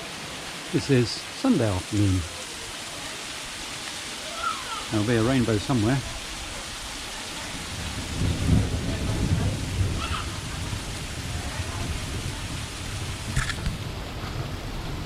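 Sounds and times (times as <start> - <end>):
steady rain falling: 0.0 - 15.0
thunder rumbling: 7.4 - 15.0.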